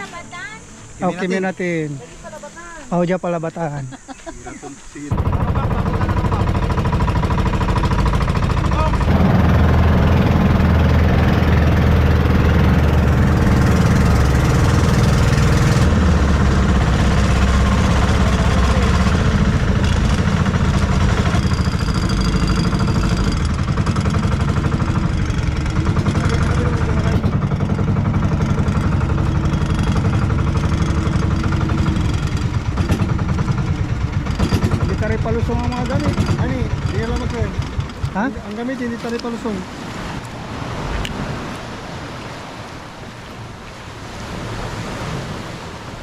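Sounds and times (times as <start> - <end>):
boat engine running: 4.0 - 46.0.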